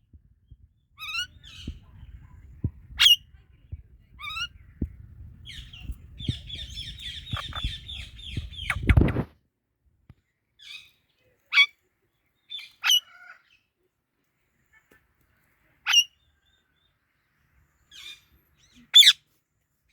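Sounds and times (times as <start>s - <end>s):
parakeet calls: 1.0s - 2.1s, 2.9s - 3.2s, 4.2s - 4.5s, 5.4s - 9.2s, 19.0s - 19.2s.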